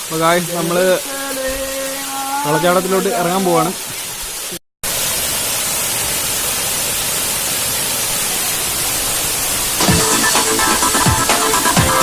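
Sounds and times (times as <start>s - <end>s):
waterfall rushing: 0.0s - 12.0s
electronic music with heavy drums: 9.8s - 12.0s.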